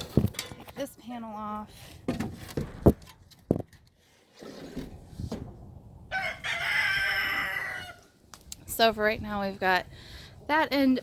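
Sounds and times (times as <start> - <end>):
rooster crowing: 6.1 - 8.1.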